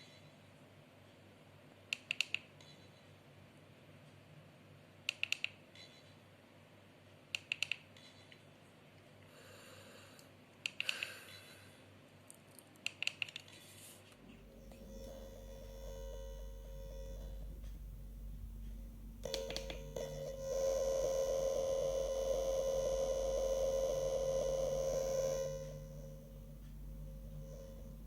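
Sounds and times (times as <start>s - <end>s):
sharp clicks: 1.9s - 2.7s, 5.1s - 5.6s, 7.3s - 8.1s, 10.6s - 11.2s, 12.8s - 13.6s, 18.6s - 20.1s
gimbal stabilizer hum: 14.2s - 28.0s.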